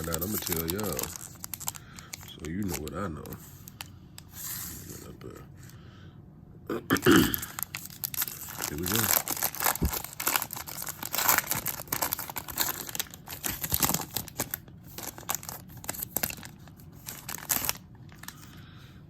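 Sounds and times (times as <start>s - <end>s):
plastic wrapper tearing and crinkling: 0.0s - 3.8s, 7.3s - 18.5s.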